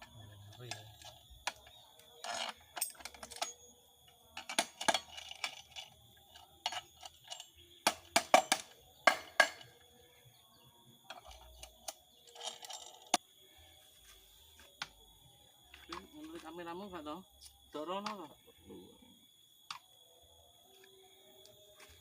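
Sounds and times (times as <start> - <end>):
metallic knocks and clinks: 0.5 - 3.7, 4.4 - 9.8, 11.1 - 13.2.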